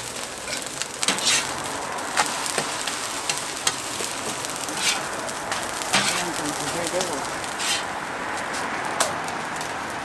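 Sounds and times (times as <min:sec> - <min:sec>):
food sizzling in hot oil: 0:00.0 - 0:10.0
cooking utensil clicks and scrapes: 0:00.4 - 0:01.6, 0:02.2 - 0:07.9.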